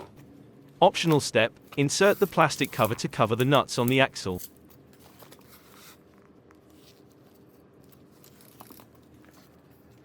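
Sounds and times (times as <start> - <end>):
plastic parts clicking and rustling: 7.9 - 9.5.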